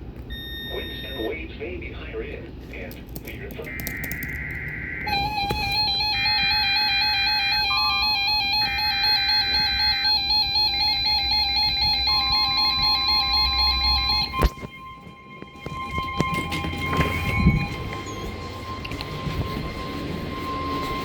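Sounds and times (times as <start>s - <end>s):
warbling electronic alarm: 0.3s - 1.5s, 3.6s - 21.0s
buzzing data bursts: 3.6s - 14.6s
steady alert tone: 5.1s - 15.0s.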